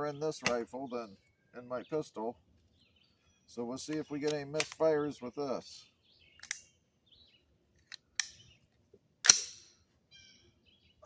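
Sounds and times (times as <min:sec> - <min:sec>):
rifle metallic clicks: 0:03.9 - 0:04.8, 0:06.4 - 0:06.7, 0:07.8 - 0:08.5, 0:09.2 - 0:09.7
faint bird chirps: 0:10.1 - 0:11.0.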